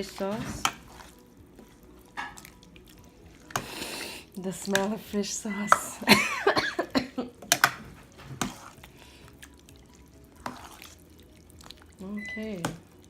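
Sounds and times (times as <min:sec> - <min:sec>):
utensil clicking and scraping bowl: 0:00.0 - 0:03.8, 0:04.6 - 0:05.0, 0:07.4 - 0:09.6, 0:10.3 - 0:11.0.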